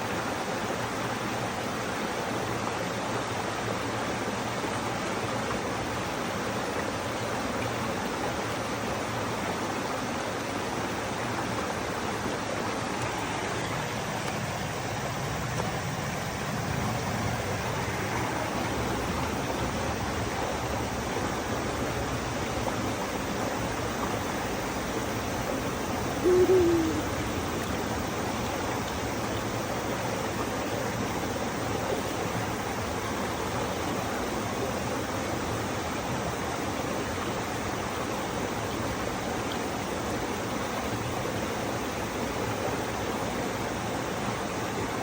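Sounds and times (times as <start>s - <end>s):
stream rushing: 0.0s - 45.0s
short hooting sound: 26.0s - 27.5s.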